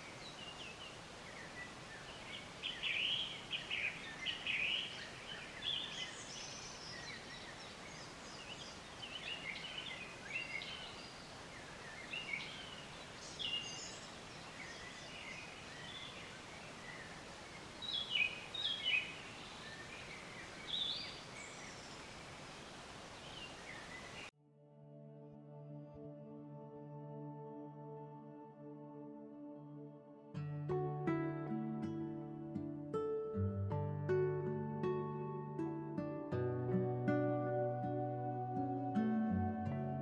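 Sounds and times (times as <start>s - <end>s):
soft steady hiss: 0.0s - 24.3s
songbirds chirping and trilling: 0.0s - 24.3s.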